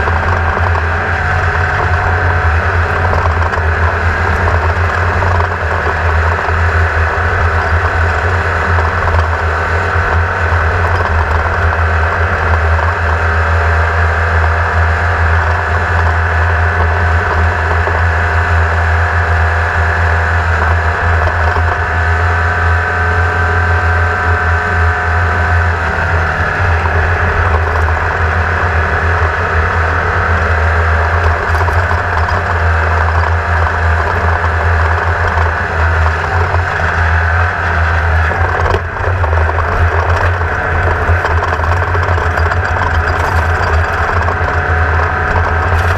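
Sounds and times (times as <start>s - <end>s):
race car engine running: 0.0s - 45.9s
ride noise: 0.0s - 45.9s.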